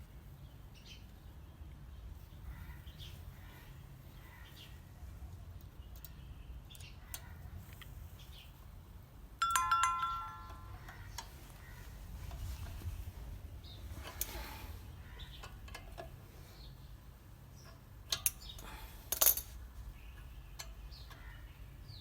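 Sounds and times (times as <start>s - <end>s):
metal part struck and ringing: 9.4s - 10.9s
metal hardware clicking and tapping: 9.4s - 11.4s, 15.3s - 16.2s, 17.6s - 21.4s.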